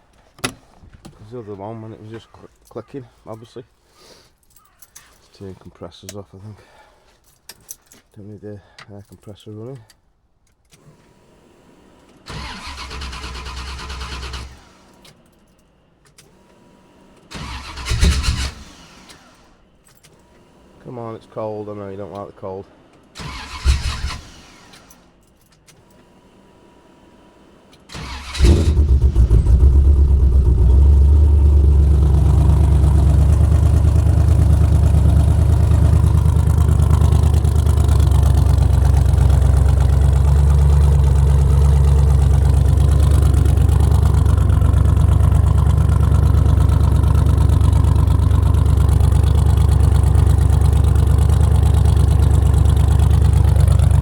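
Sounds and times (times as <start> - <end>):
starter motor cranking: 12.2 - 15.2, 17.2 - 20.6, 23.1 - 25.0, 27.9 - 54.0
engine idling with deep rumble: 28.2 - 54.0.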